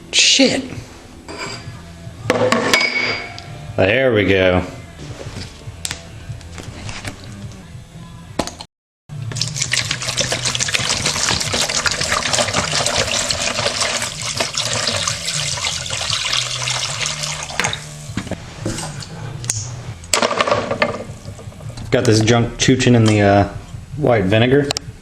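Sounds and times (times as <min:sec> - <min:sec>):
liquid pouring into container: 0:09.3 - 0:17.9.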